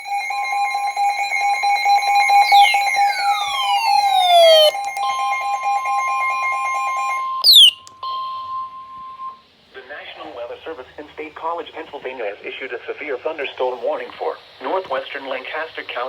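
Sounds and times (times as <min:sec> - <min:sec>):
electronic alarm tone with flutter: 0:00.0 - 0:06.6, 0:07.5 - 0:07.8
falling electronic sweeps: 0:02.2 - 0:04.7
short falling chirp: 0:02.5 - 0:04.7, 0:07.4 - 0:07.8.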